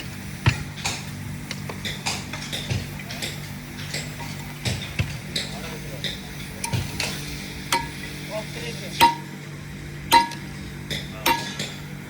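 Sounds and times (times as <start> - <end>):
hammer striking steel: 7.7 - 8.1, 9.0 - 9.4, 10.1 - 11.8.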